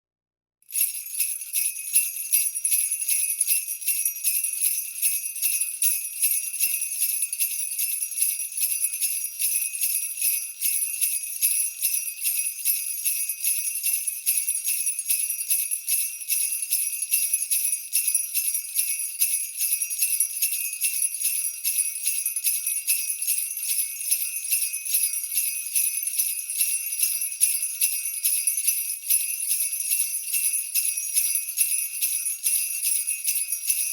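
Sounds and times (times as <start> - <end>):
jingle bells shaken: 0.7 - 33.9.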